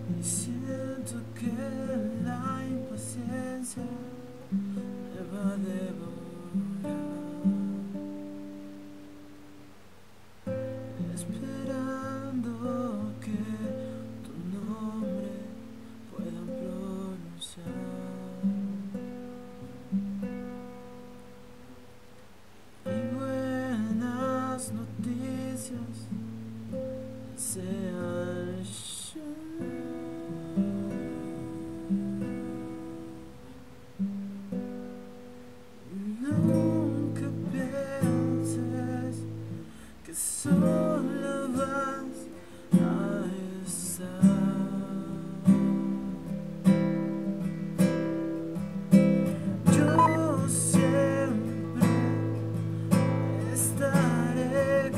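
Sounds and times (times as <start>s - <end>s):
acoustic guitar music: 0.0s - 54.9s.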